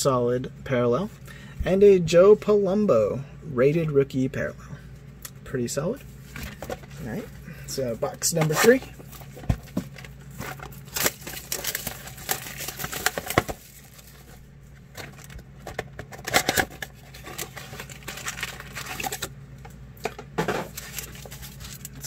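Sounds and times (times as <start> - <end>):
plastic wrapping crinkling and tearing: 10.3 - 15.5, 16.1 - 19.3, 20.6 - 22.0.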